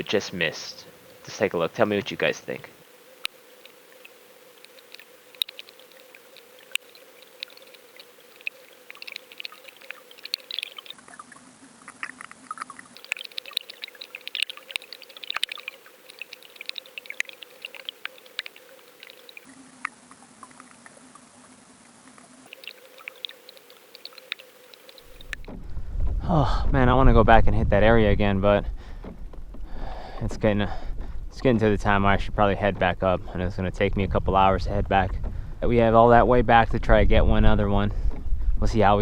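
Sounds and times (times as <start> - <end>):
underwater crackles and clicks: 0.0 - 21.0, 22.2 - 25.6
faint steady hum: 0.0 - 39.0.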